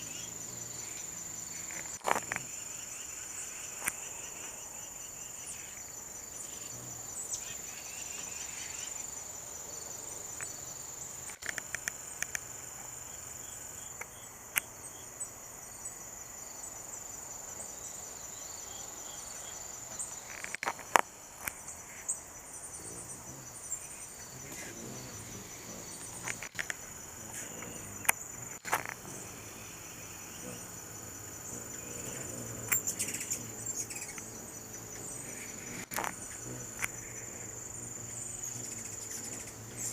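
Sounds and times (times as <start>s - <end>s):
insects trilling: 0.0s - 39.9s
sharp clicks and chirps: 11.2s - 12.5s, 19.9s - 22.1s, 26.0s - 29.1s, 32.6s - 34.3s.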